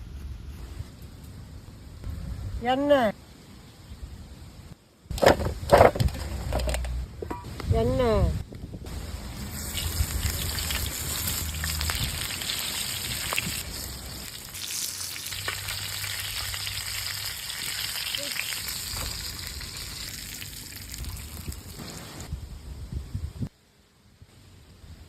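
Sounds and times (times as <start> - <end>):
food sizzling in hot oil: 9.1 - 22.3.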